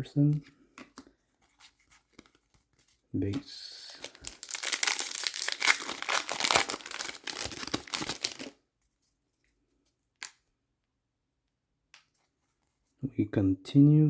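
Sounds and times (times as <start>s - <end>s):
foil wrapper tearing and crinkling: 3.8s - 8.6s.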